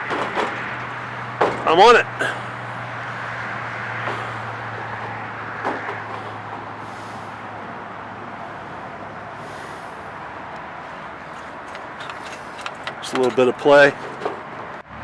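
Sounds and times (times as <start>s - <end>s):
highway traffic noise: 0.0s - 15.0s
low engine drone: 2.1s - 13.6s.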